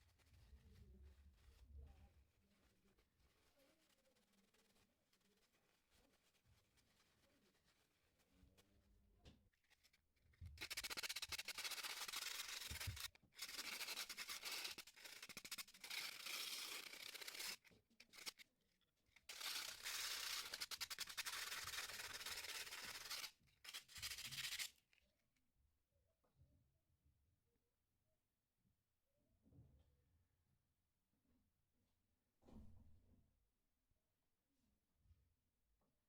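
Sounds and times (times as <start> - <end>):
gritty scrubbing strokes: 10.6 - 18.4.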